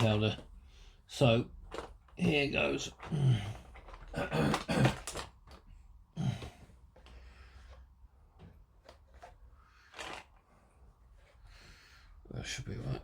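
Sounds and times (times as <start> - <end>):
person speaking: 0.0 - 0.5
small objects clicking and knocking: 1.6 - 5.7.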